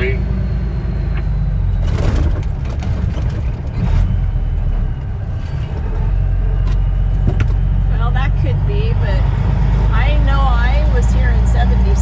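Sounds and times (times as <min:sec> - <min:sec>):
vehicle engine and road noise: 0:00.0 - 0:12.0.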